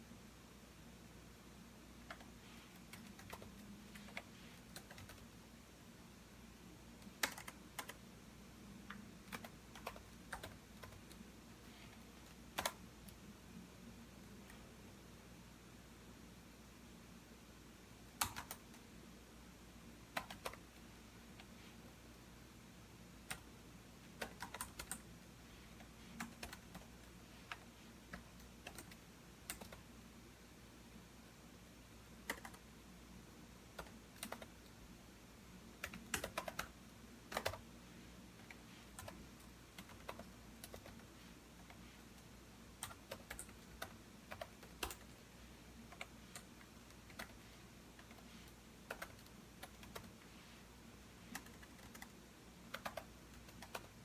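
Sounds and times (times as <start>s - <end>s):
computer keyboard typing: 2.1s - 5.3s, 7.0s - 8.0s, 8.9s - 11.2s, 11.9s - 13.2s, 18.1s - 18.8s, 20.1s - 20.7s, 23.2s - 23.5s, 24.2s - 25.1s, 25.7s - 29.8s, 32.2s - 32.6s, 33.7s - 34.7s, 35.8s - 37.6s, 38.4s - 45.2s, 45.9s - 50.2s, 51.2s - 54.0s.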